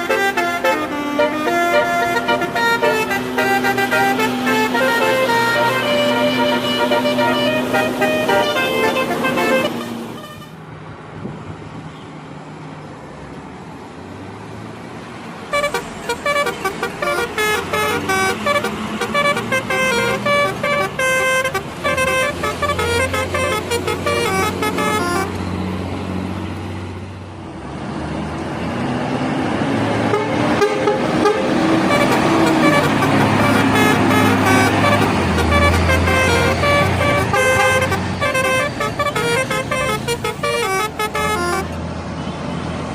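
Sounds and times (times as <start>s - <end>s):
multi-tone air horn tune: 0.0s - 10.6s, 15.5s - 25.4s, 30.1s - 41.8s
bus engine running: 0.0s - 11.4s, 14.8s - 42.9s.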